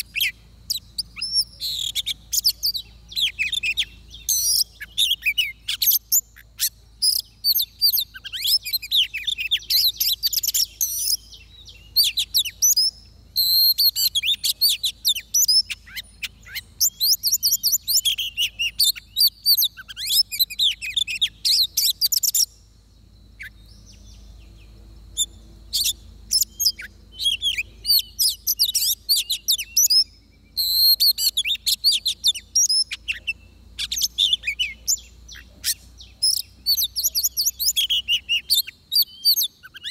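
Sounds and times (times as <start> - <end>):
bird singing whistles and chirps: 0.0 - 22.7, 23.3 - 39.9.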